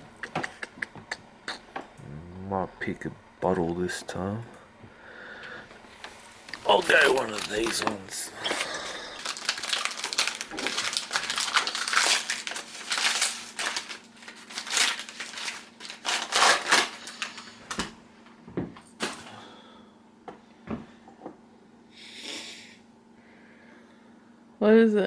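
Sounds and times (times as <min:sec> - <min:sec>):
clicks and taps: 0:00.1 - 0:02.0
paper and cardboard crinkling: 0:05.9 - 0:17.8.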